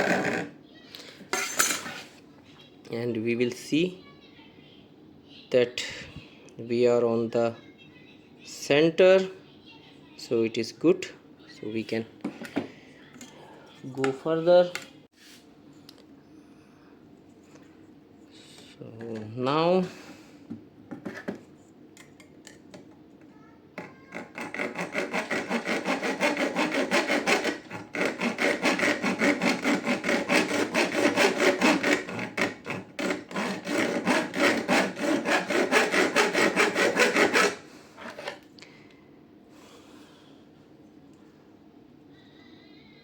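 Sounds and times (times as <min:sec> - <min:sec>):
hacksaw cutting metal: 0:23.9 - 0:38.4.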